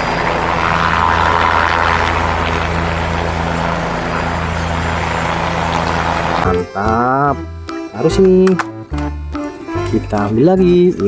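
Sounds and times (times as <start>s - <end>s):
helicopter engine and rotor drone: 0.0s - 6.8s.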